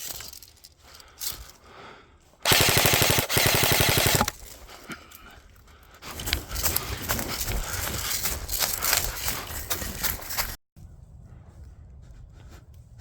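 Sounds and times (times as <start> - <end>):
airsoft gun firing bursts: 2.4 - 4.4
rustling steps through brush: 4.2 - 10.6.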